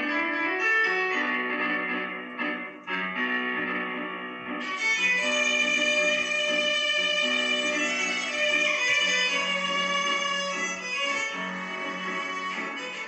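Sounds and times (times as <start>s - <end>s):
bowed violin melody: 0.0s - 13.0s
plucked string accompaniment: 0.0s - 13.0s.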